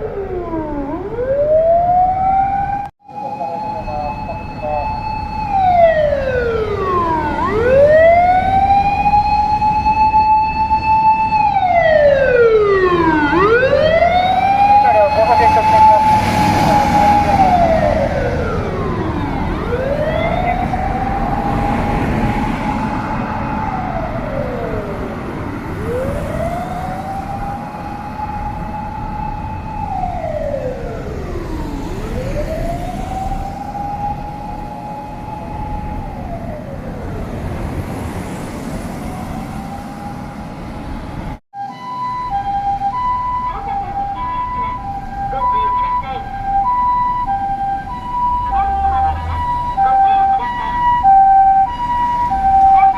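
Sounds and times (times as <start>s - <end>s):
road noise: 0.0s - 52.9s
two-tone electronic ambulance siren: 0.0s - 52.9s.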